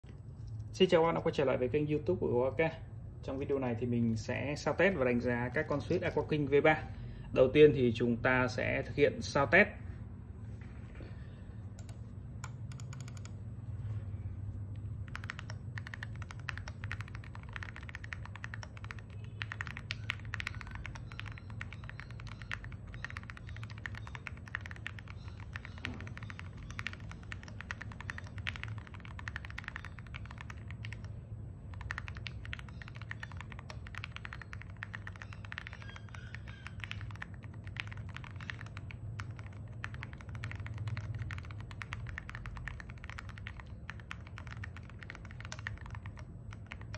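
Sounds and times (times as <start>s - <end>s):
steady low hum: 0.0s - 46.9s
mechanical keyboard typing: 11.7s - 13.4s, 15.0s - 46.9s.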